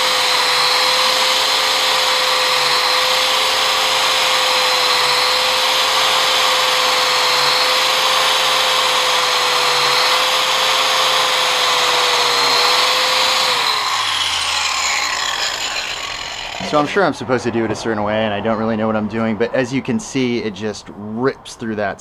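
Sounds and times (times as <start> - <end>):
grinder motor whine: 0.0 - 17.0.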